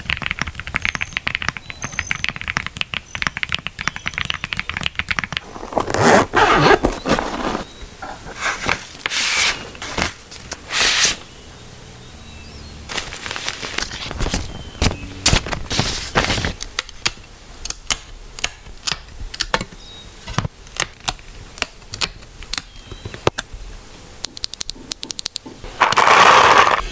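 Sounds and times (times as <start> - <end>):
scraping sounds: 5.5 - 11.2, 12.9 - 16.6.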